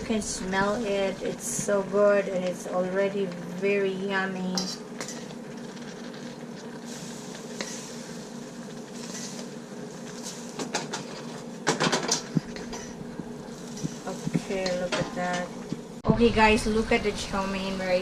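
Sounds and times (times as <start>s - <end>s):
steady hum: 0.0s - 18.0s
metal utensil scraping a pan: 7.6s - 8.0s, 9.0s - 9.5s, 10.2s - 15.6s.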